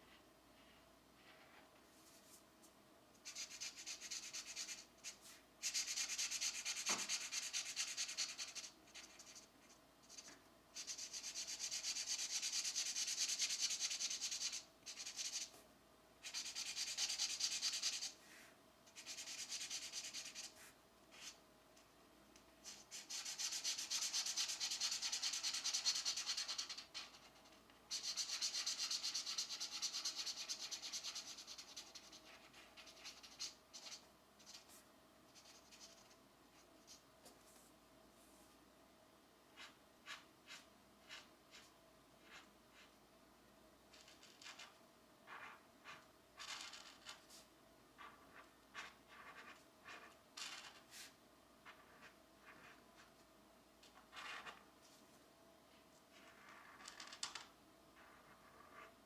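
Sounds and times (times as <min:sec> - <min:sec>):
pencil scratching on paper: 0:03.2 - 0:15.5, 0:16.2 - 0:18.2, 0:19.0 - 0:21.4, 0:22.6 - 0:36.2, 0:39.6 - 0:42.9, 0:48.0 - 0:53.1.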